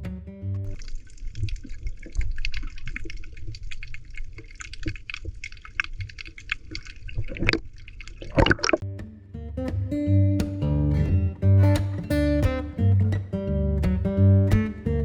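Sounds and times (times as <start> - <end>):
water dripping: 0.5 - 9.2
water splashing and trickling: 0.6 - 8.8.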